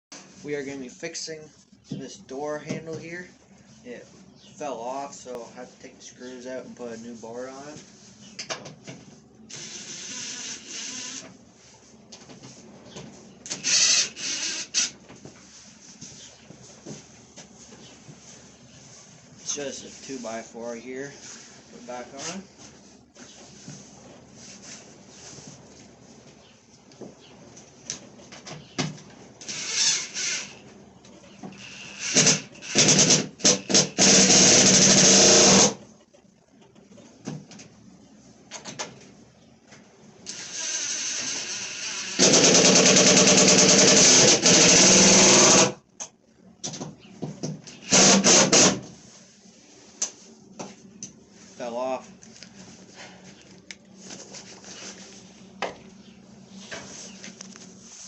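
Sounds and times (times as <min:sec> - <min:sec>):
screwdriver whirring and grinding: 0:09.5 - 0:11.3, 0:13.5 - 0:15.0, 0:29.4 - 0:30.6, 0:31.5 - 0:35.8, 0:40.3 - 0:45.8, 0:47.7 - 0:48.8
scraping and handling noises: 0:15.0 - 0:29.4, 0:48.9 - 0:58.0.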